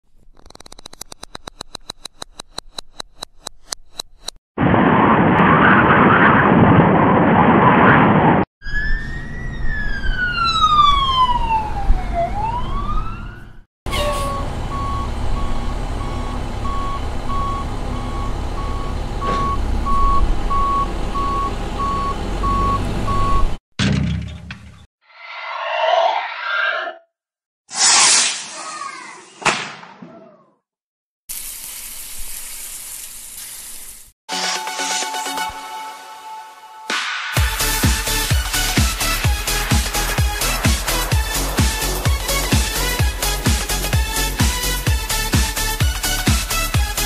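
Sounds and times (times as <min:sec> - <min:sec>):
police siren wailing: 0:08.6 - 0:16.4
truck reversing alarm beeping: 0:08.6 - 0:23.6
truck engine running: 0:14.0 - 0:23.5.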